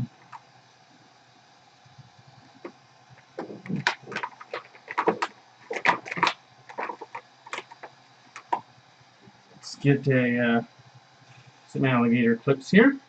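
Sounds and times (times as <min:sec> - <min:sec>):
small hard objects clicking: 0:02.6 - 0:08.6.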